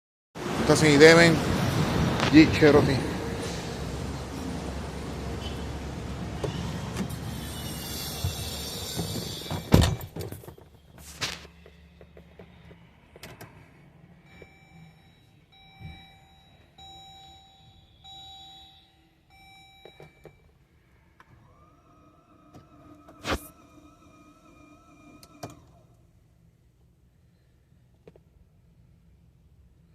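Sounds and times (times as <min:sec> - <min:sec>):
electronic chime tones: 0:14.5 - 0:20.3.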